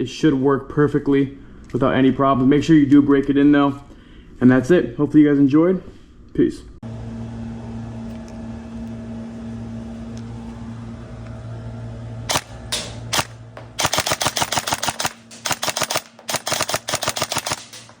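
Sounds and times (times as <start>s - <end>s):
low electrical hum: 0.0s - 18.0s
airsoft rifle shots: 12.3s - 18.0s.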